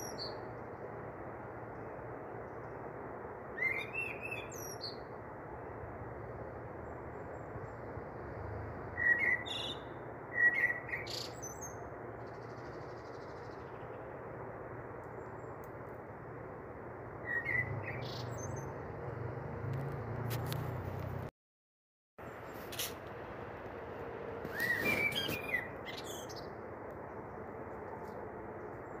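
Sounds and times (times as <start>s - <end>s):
bird chirps: 0.0s - 0.5s, 3.6s - 5.1s, 9.0s - 14.1s, 17.2s - 18.8s, 24.5s - 26.6s.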